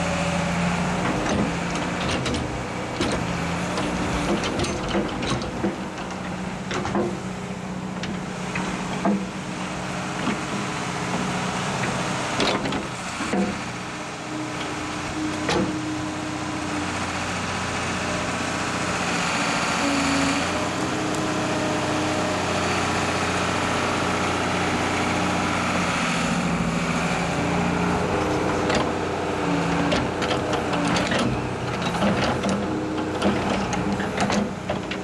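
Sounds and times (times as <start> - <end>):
engine idling: 0.0 - 35.0
sharp knocks and clanks: 1.1 - 7.2.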